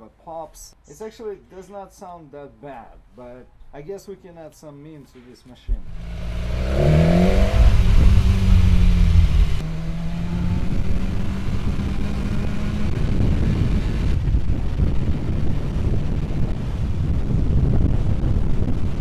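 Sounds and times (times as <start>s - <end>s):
low rushing noise: 5.7s - 17.9s
motorcycle engine accelerating: 5.7s - 18.8s.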